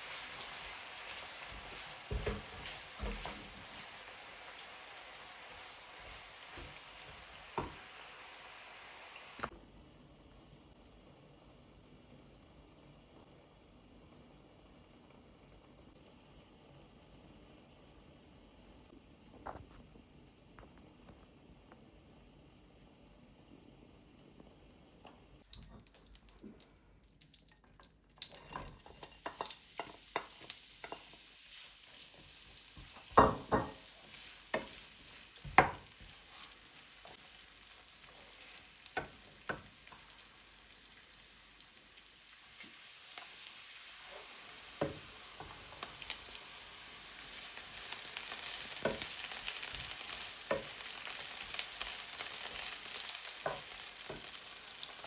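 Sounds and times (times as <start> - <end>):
food sizzling in a pan: 0.0 - 9.5, 27.7 - 55.0.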